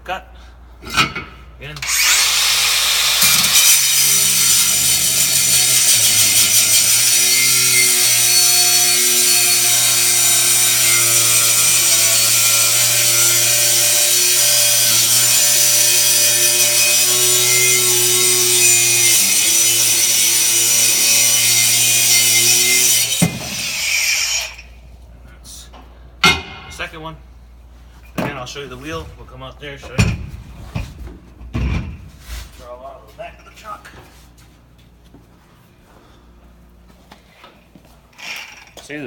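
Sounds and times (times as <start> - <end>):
angle grinder cutting wood: 1.8 - 24.7.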